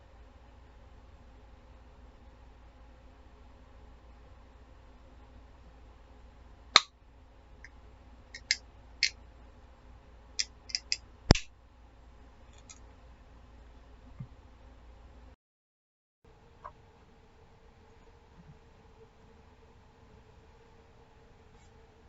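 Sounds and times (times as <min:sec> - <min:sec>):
soda can clicks and taps: 0:08.4 - 0:08.6, 0:10.4 - 0:11.5.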